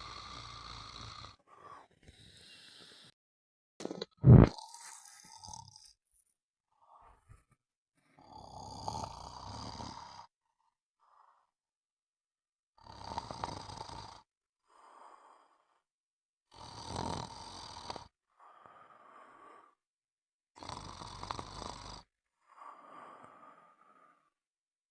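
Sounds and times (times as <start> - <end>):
person snoring: 0.0 - 3.2, 3.8 - 5.9, 8.2 - 10.3, 12.8 - 15.7, 16.5 - 19.8, 20.6 - 24.3.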